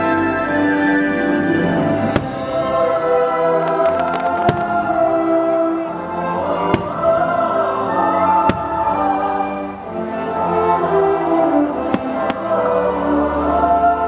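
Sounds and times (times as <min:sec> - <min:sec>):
orchestral music with choir: 0:00.0 - 0:14.0
firework bangs: 0:02.0 - 0:02.9, 0:03.5 - 0:05.4, 0:06.6 - 0:07.4, 0:08.4 - 0:09.1.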